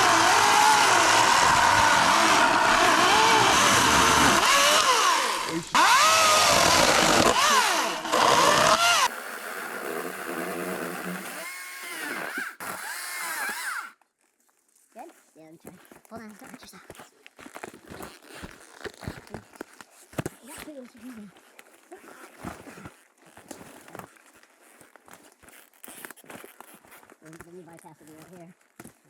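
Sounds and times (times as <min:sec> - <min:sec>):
small petrol engine revving: 0:00.0 - 0:13.9.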